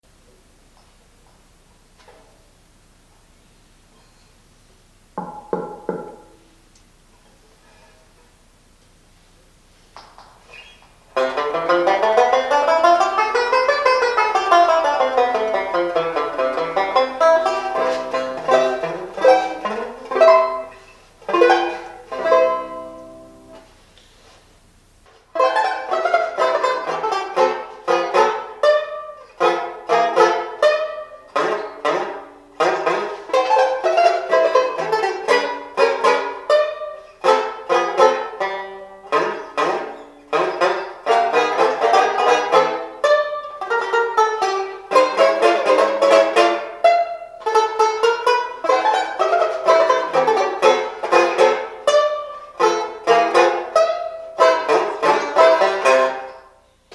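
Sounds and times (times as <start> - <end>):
banjo playing brisk tune: 11.1 - 23.7, 25.1 - 56.6.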